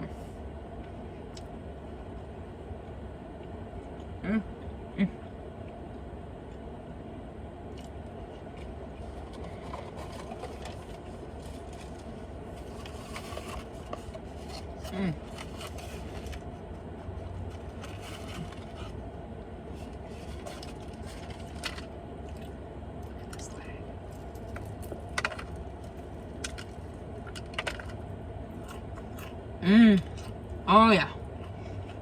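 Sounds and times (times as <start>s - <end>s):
low hum: 0.0s - 32.0s
person chewing food: 22.2s - 23.4s, 28.5s - 30.6s.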